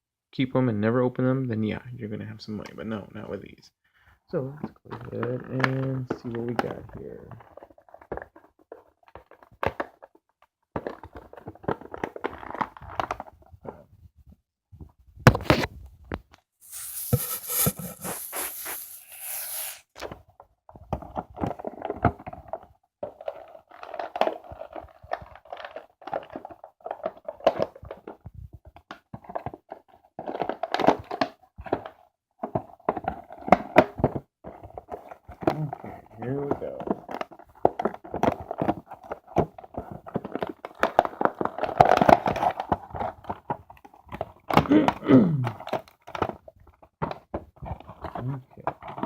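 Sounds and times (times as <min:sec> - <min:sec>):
plastic and cardboard crinkling: 0:10.8 - 0:13.3, 0:16.6 - 0:19.8, 0:21.6 - 0:28.2, 0:36.5 - 0:44.7
packaging tearing: 0:16.6 - 0:19.8
packaging knocks and scrapes: 0:16.6 - 0:20.1.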